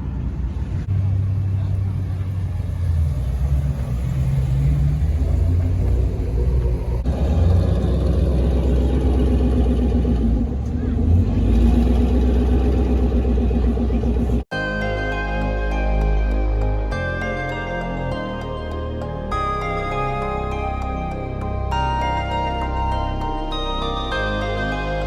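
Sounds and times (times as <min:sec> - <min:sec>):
car engine idling: 0:00.8 - 0:14.4
engine revving: 0:00.8 - 0:14.5.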